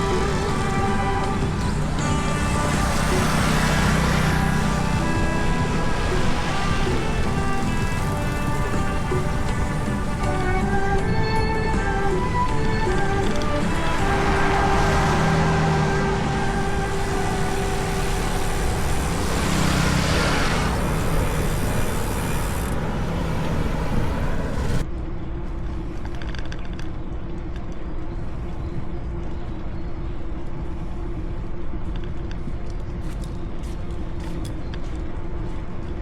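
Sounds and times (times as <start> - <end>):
road traffic rumble: 0.0 - 24.9.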